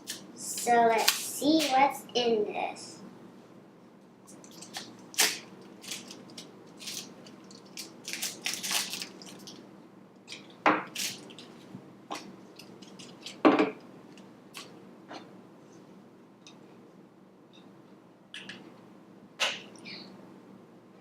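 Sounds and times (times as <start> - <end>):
toy packaging crinkling and snapping: 4.3 - 9.6, 11.0 - 11.5.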